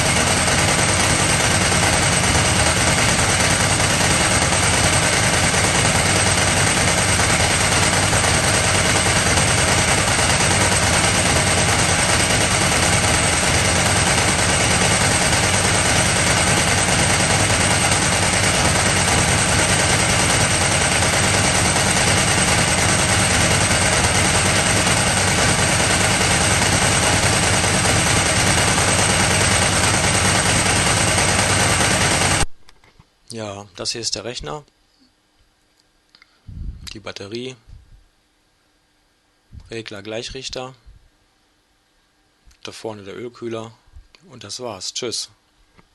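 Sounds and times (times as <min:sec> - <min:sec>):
loud mechanical rattle: 0:00.0 - 0:32.5
motorcycle engine running steadily: 0:00.0 - 0:32.5.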